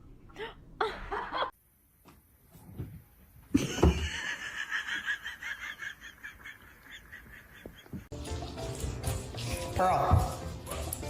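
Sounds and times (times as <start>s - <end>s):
person laughing: 3.5s - 8.1s.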